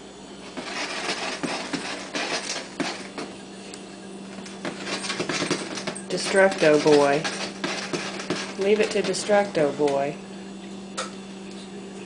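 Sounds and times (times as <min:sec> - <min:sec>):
steady low hum: 0:00.0 - 0:12.0
ferret scratching at a toy: 0:00.5 - 0:03.3, 0:04.4 - 0:09.7.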